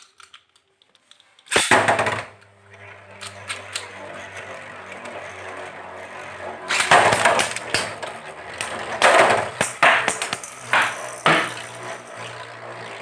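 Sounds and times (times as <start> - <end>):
spinning tops whirring: 1.5 - 13.0
spinning tops clashing: 5.0 - 13.0.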